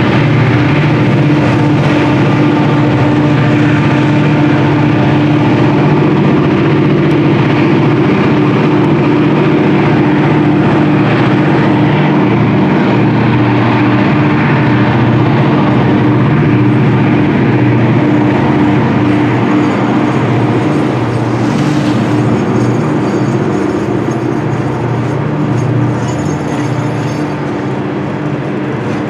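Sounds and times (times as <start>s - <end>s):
diesel locomotives droning: 0.0s - 29.0s.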